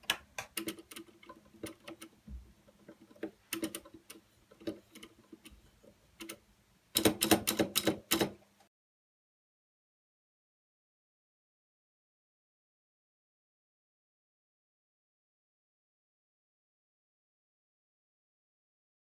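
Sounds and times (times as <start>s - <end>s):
typing on clicky mechanical keyboard: 0.0s - 2.1s, 7.0s - 8.4s.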